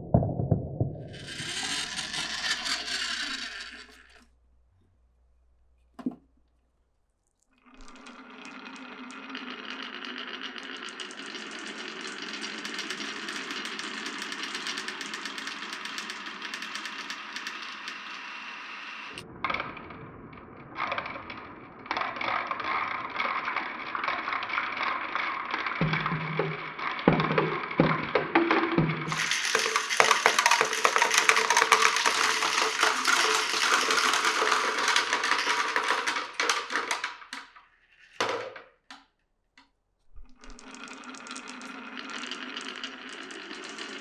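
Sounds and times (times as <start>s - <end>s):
marbles rolling on a marble run: 0.4s - 4.2s, 7.6s - 19.9s, 20.7s - 38.6s, 40.4s - 44.0s
sharp knocks: 25.8s - 29.2s.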